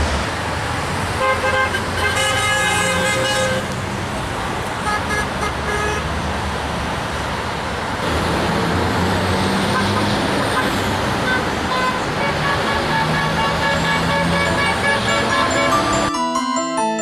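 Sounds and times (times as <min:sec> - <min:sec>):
passing vehicles noise: 0:00.0 - 0:16.2
car horns honking: 0:01.2 - 0:03.7, 0:04.8 - 0:06.1, 0:09.6 - 0:16.1.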